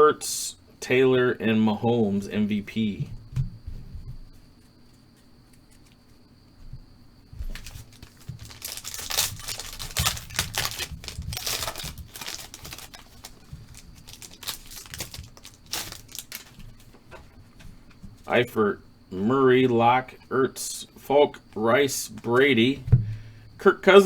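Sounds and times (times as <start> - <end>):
card pack wrapper crinkling and tearing: 7.6 - 16.6.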